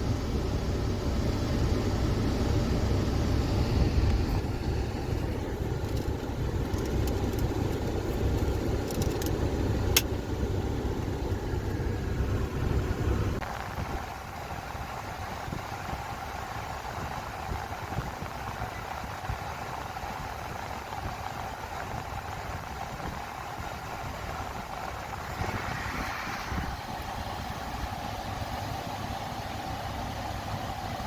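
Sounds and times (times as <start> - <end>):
engine rumbling: 0.0 - 31.0.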